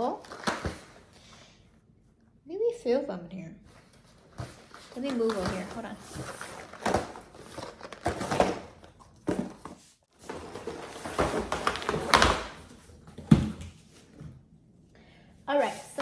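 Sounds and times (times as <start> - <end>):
cardboard rustling: 0.2 - 1.2, 3.8 - 14.4
cardboard boxes thudding: 4.4 - 13.7.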